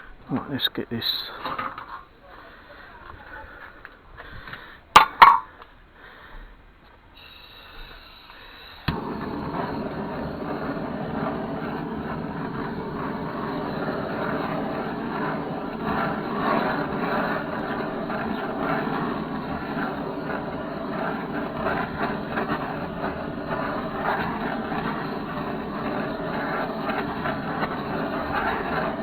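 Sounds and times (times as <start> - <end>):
blowtorch flame hissing: 7.2 - 29.0
blowtorch lighting click: 8.3 - 29.0.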